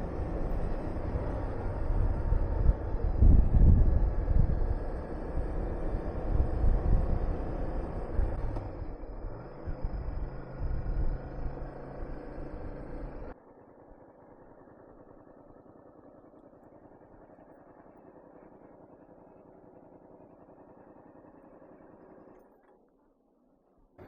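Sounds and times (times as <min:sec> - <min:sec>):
motorcycle engine running: 0:00.0 - 0:24.0
wind buffeting microphone: 0:01.0 - 0:08.6.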